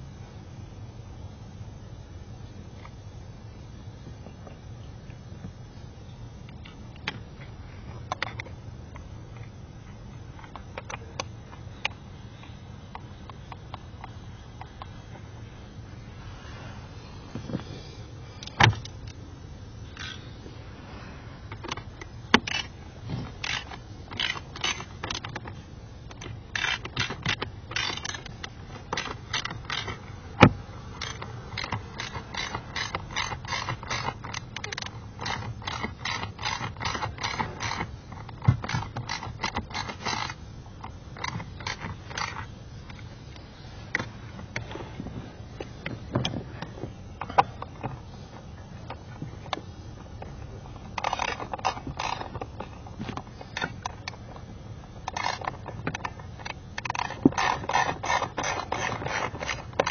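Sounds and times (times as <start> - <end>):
tools clicking and scraping plastic: 21.5 - 44.9, 45.7 - 59.9.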